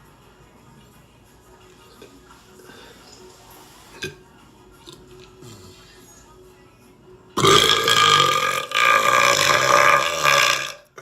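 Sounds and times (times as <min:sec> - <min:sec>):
faint background music: 0:00.0 - 0:11.0.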